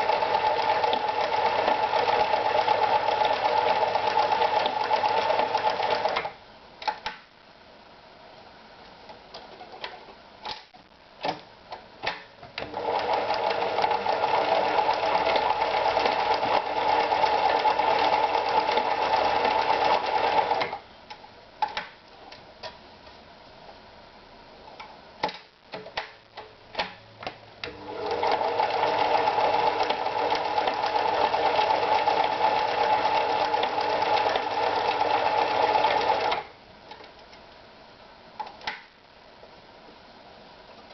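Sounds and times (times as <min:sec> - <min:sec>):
sewing machine stitching: 0:00.0 - 0:06.3, 0:12.6 - 0:20.8, 0:27.6 - 0:36.5.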